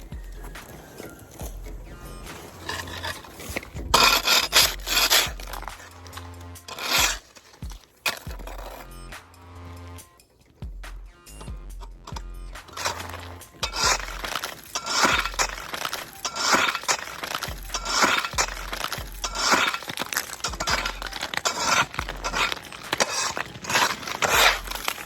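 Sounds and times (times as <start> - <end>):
scraper breaking up ice: 0.0 - 9.0, 12.1 - 25.0
background music with bass: 0.0 - 16.7, 17.5 - 19.8, 20.5 - 25.0.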